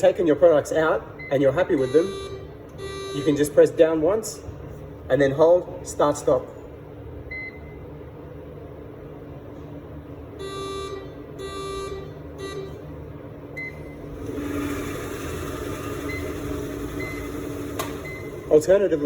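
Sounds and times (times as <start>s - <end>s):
steady hum with hiss: 0.0s - 19.0s
oven buzzer beeps: 1.2s - 3.5s, 10.4s - 12.9s, 13.6s - 19.0s.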